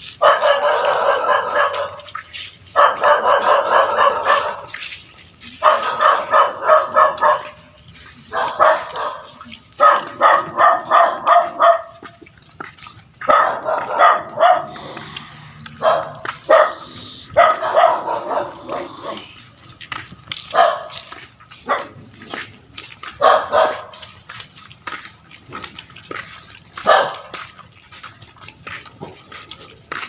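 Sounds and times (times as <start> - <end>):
dogs barking: 0.2 - 4.9, 5.6 - 12.2, 13.2 - 19.5, 20.4 - 22.4, 23.1 - 24.2, 26.8 - 27.4.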